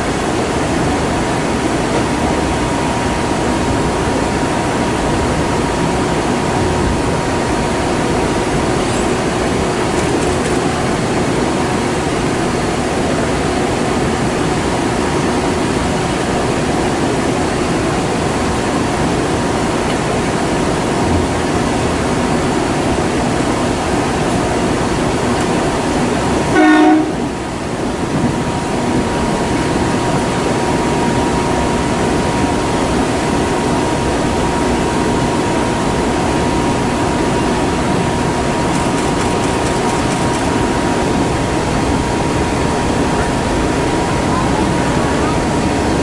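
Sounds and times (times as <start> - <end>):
faint steady whine: 0.0 - 46.0
train wheels rumbling on rail: 0.0 - 46.0
train horn blast: 26.4 - 27.4.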